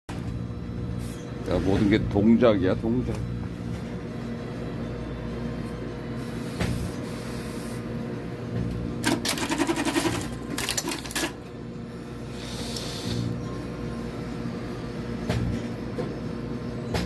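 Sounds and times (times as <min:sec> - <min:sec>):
sewing machine stitching: 0:09.0 - 0:11.3.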